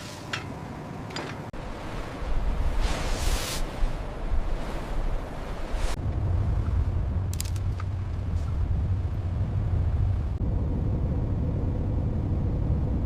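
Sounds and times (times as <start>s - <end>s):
rushing sea wash: 1.5s - 7.3s
low engine rumble: 5.9s - 13.0s.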